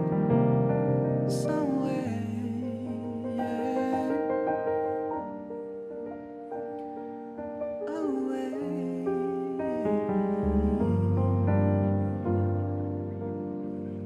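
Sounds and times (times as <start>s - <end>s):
sustained keyboard chords: 0.0s - 14.0s.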